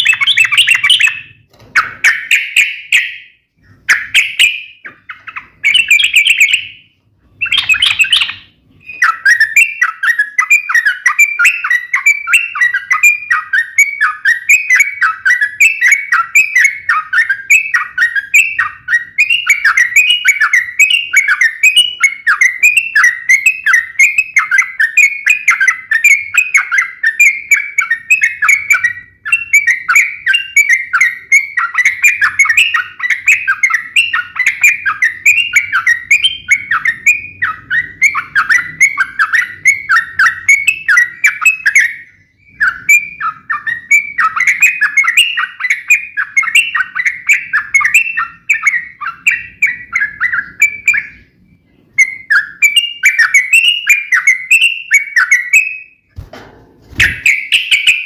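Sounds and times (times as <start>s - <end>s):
bird rapid chattering call: 7.4s - 13.8s.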